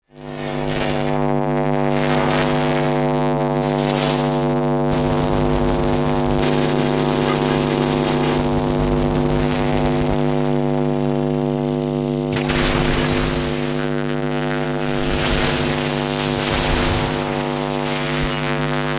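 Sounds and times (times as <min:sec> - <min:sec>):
electric arc buzzing: 0:00.2 - 0:18.9
hissing crackle: 0:04.9 - 0:10.5, 0:12.3 - 0:18.9.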